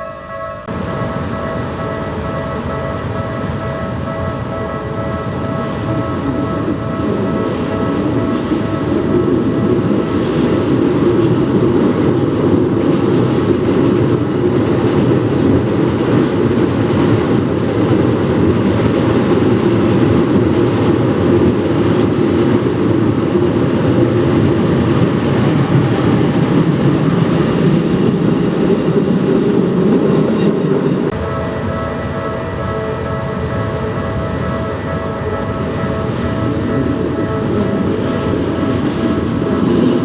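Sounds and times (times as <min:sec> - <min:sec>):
level-crossing bell ringing: 0:00.0 - 0:40.0
train wheels rumbling on rails: 0:00.0 - 0:40.0
clickety-clack of rail joints: 0:02.8 - 0:31.2.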